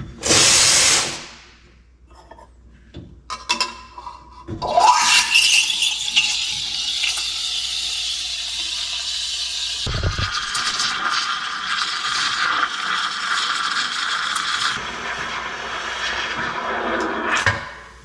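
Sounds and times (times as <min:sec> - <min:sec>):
water hissing: 0:04.9 - 0:17.4.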